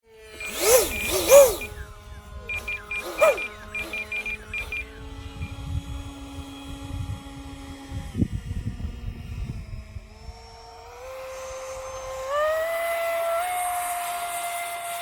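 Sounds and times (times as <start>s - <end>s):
rising and falling whines: 0.2s - 6.6s
electronic beeps: 0.4s - 5.6s.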